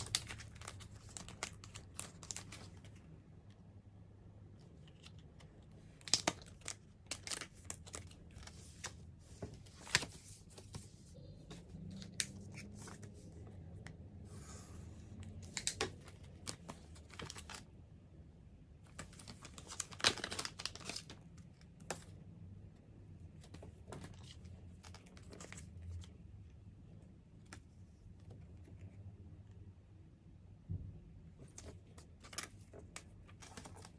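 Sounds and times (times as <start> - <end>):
packaging crinkling: 0.0 - 2.8.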